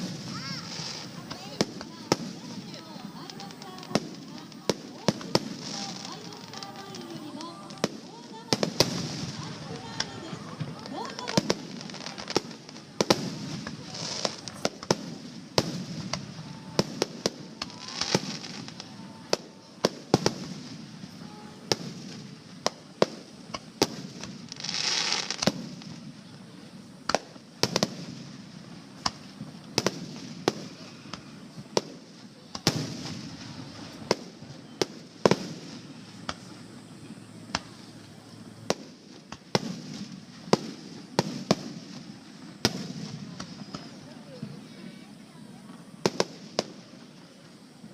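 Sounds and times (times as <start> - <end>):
firework shells bursting: 0.0 - 26.0
rushing crackling firework burst: 0.0 - 47.9.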